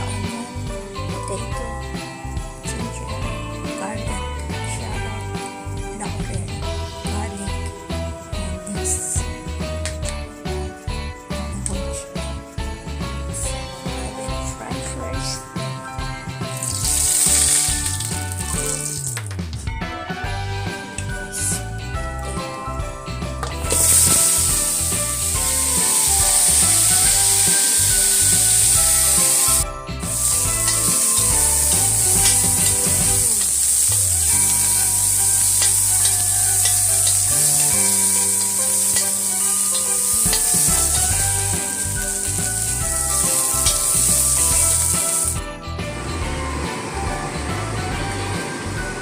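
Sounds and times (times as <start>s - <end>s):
background music: 0.0s - 49.0s
food sizzling in hot oil: 16.4s - 19.2s, 23.6s - 45.4s
stirring food: 23.7s - 45.4s.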